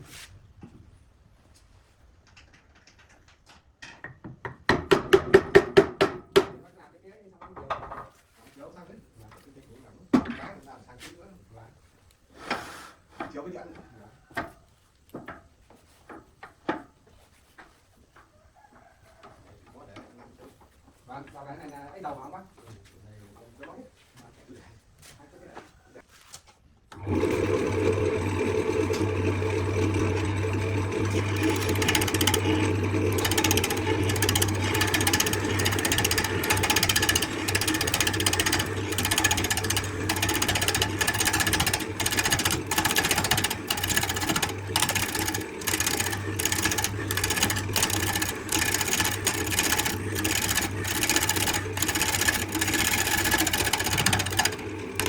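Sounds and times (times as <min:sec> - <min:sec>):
power tool working wood: 0:27.0 - 0:55.0.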